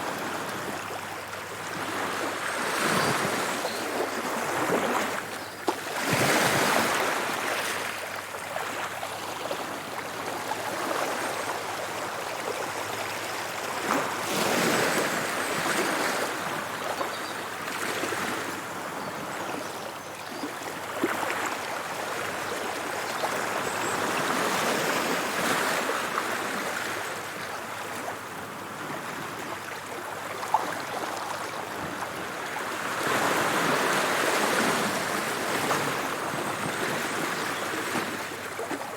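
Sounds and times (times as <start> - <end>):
waves breaking on shore: 1.5 - 8.9, 30.4 - 38.9.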